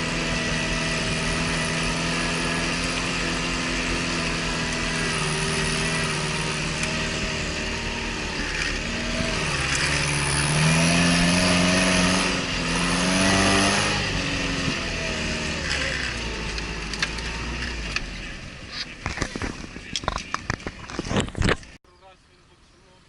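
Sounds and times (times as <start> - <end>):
vehicle engine revving: 0.0 - 21.8.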